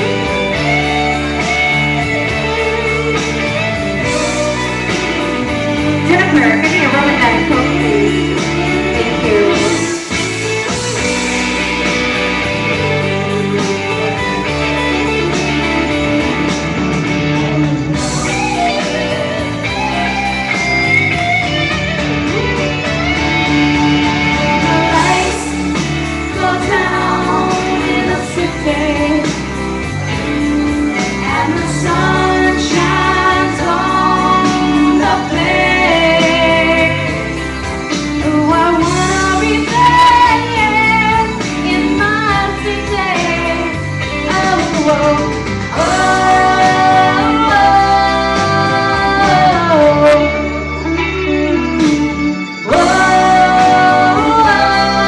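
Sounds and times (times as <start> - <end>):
backing music with guitar: 0.0 - 55.0
woman singing: 6.0 - 10.5, 24.5 - 29.6, 31.0 - 55.0.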